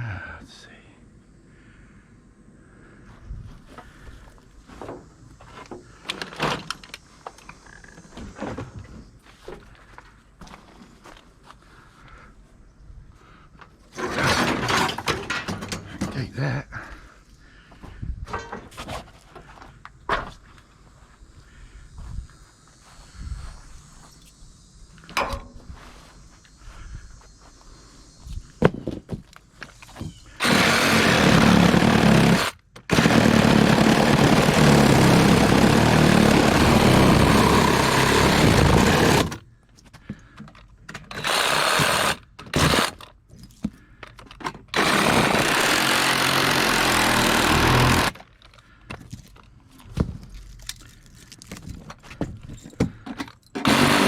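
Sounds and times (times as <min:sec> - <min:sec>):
knocks and clanks: 0:14.0 - 0:16.3
loud engine running: 0:30.4 - 0:39.4, 0:44.8 - 0:48.1, 0:53.6 - 0:54.0.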